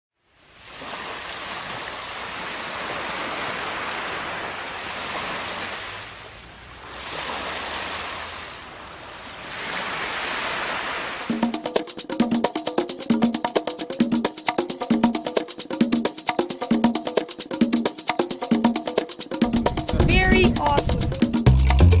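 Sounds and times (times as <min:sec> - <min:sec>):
ocean surf washing in: 0:00.4 - 0:12.0, 0:19.2 - 0:21.5.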